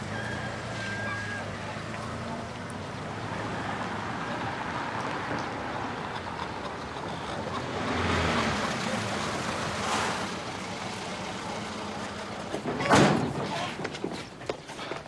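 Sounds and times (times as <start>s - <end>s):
steady vehicle noise: 0.0s - 15.0s
vehicle passing whoosh: 1.4s - 12.2s.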